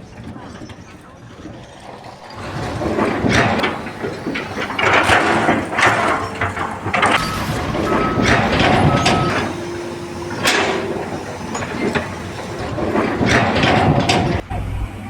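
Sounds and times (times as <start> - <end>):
metal clanks and knocks: 0.0 - 14.5
machinery running: 0.0 - 15.0
short steady tones: 7.1 - 12.7.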